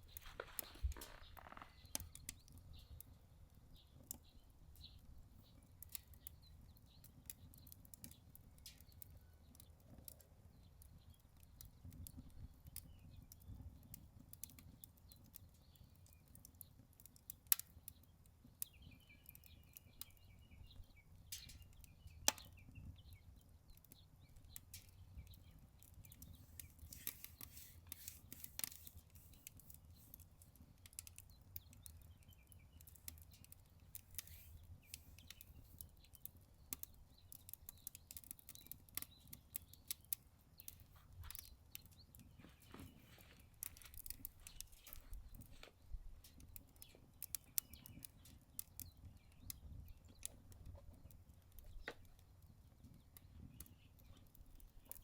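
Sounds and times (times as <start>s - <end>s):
wood fire crackling: 0.0s - 55.0s
bird chirping: 31.2s - 45.7s, 46.3s - 51.0s.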